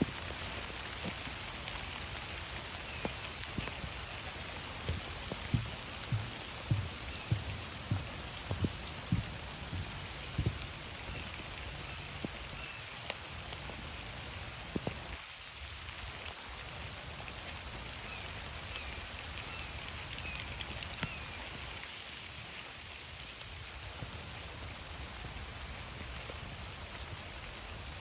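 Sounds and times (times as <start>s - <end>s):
footsteps on a trail: 0.0s - 15.2s
steady rain falling: 0.0s - 28.0s
soft thumps: 4.8s - 10.6s.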